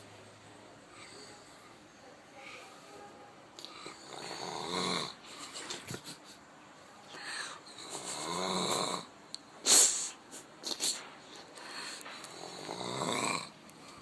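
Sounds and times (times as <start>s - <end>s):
loud rattling snores: 3.9s - 5.2s, 7.9s - 9.1s, 12.3s - 13.5s.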